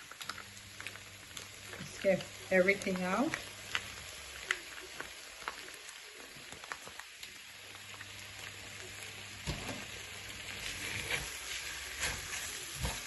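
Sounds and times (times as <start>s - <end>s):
stir-fry sizzling in a pan: 0.0s - 13.0s.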